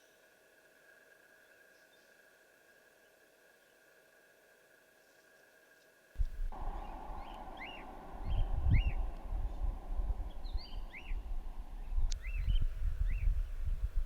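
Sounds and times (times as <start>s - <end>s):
birds chirping: 6.2s - 14.0s
steady low rumble: 6.2s - 14.0s.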